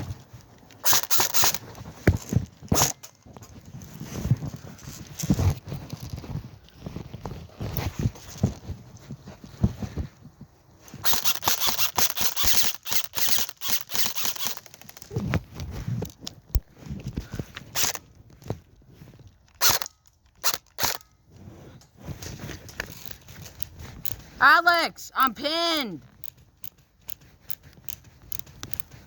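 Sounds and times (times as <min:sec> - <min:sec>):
airsoft guns firing: 0:00.8 - 0:01.6, 0:19.6 - 0:21.0.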